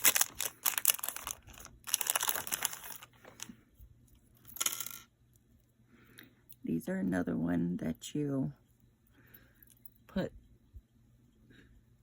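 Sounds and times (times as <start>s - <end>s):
plastic bag crinkling: 0.0s - 3.5s.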